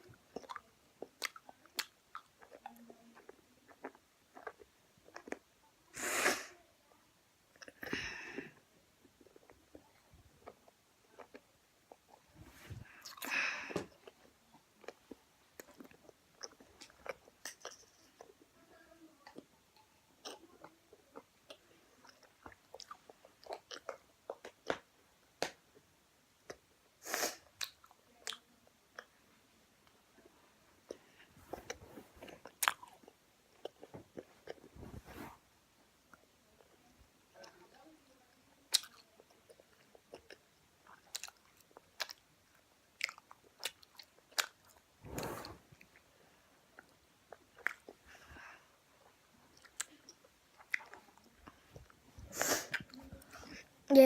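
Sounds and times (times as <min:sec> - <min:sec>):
mouth chewing gummy sweets: 0:00.1 - 0:05.6, 0:20.2 - 0:25.5, 0:29.9 - 0:34.7, 0:38.7 - 0:46.0, 0:46.7 - 0:53.7
wet chewing clicks and smacks: 0:00.3 - 0:05.5, 0:38.7 - 0:44.8, 0:49.5 - 0:51.6.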